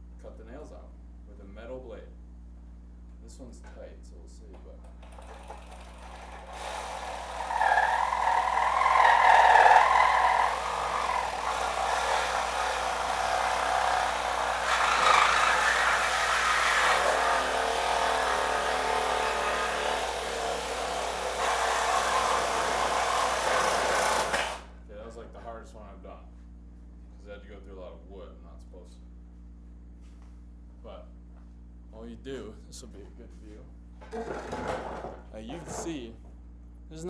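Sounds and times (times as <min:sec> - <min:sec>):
reciprocating saw cutting nails and wood: 0:04.9 - 0:24.8.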